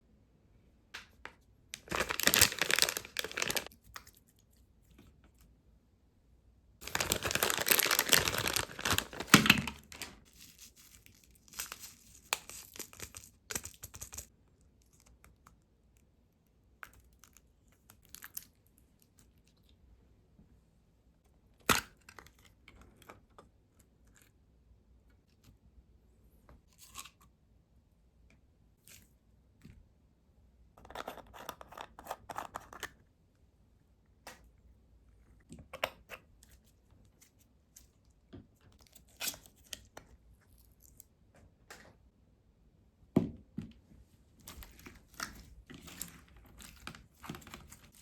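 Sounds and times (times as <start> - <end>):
plastic packaging tearing and crinkling: 1.8 - 3.7, 6.8 - 13.8.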